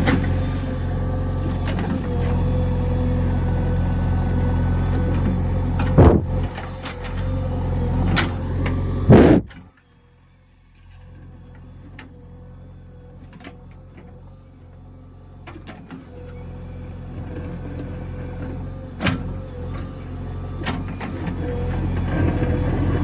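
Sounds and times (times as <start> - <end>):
diesel engine running: 0.0 - 23.0
quiet engine hum: 0.0 - 23.0
sharp knock: 9.1 - 9.5.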